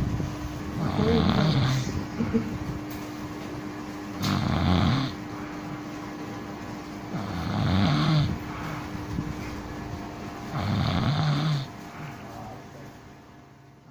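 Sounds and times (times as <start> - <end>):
person snoring: 0.8 - 2.0, 4.2 - 5.2, 7.1 - 8.9, 10.5 - 11.7.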